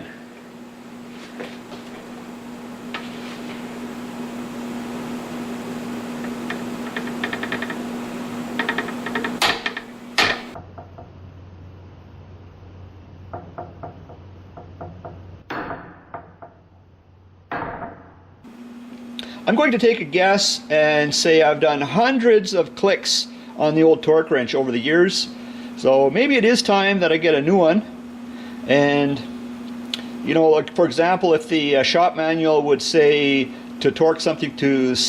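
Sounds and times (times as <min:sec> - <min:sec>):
torque wrench ticking: 0:06.2 - 0:08.0, 0:08.6 - 0:10.6.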